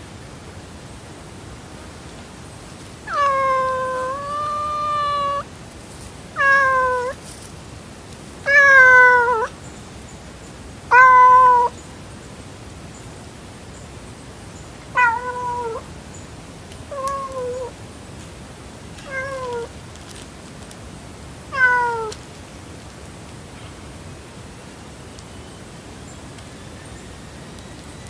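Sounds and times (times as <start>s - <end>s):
cat meowing: 3.1s - 5.5s, 6.4s - 7.2s, 8.5s - 9.5s, 10.9s - 11.8s, 14.9s - 15.9s, 16.9s - 17.8s, 19.0s - 19.7s, 21.5s - 22.2s.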